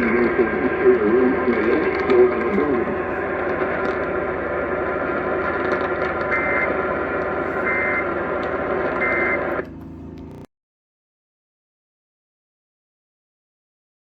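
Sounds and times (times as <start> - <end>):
radio static: 0.0 - 10.5.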